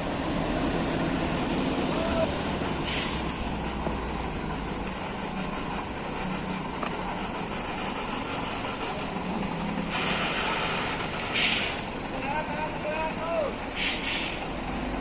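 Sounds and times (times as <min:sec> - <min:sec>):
heavy truck engine running: 0:00.0 - 0:15.0
air brake hiss: 0:02.8 - 0:03.4, 0:09.9 - 0:11.9, 0:13.7 - 0:14.5.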